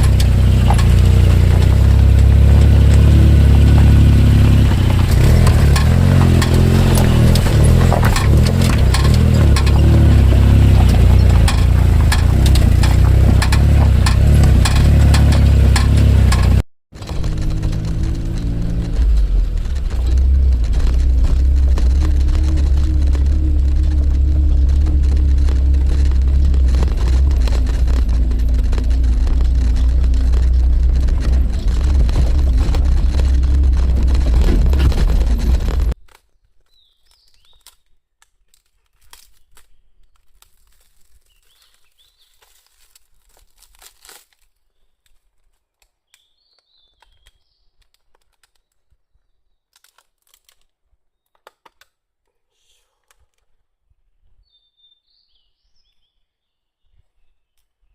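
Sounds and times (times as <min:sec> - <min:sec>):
engine and road noise rumble: 0:00.0 - 0:36.0
rattles and clicks: 0:00.0 - 0:36.0
steady whine: 0:00.0 - 0:36.0.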